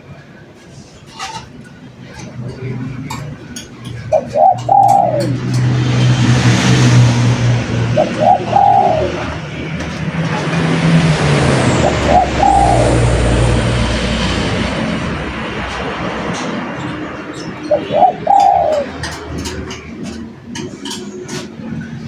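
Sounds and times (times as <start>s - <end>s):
dove cooing: 2.5s - 21.4s.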